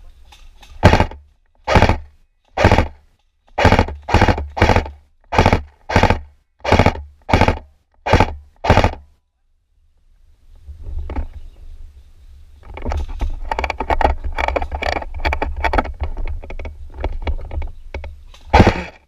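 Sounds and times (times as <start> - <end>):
airsoft rifle shots: 0.8 - 3.0, 3.6 - 9.0, 18.5 - 19.0.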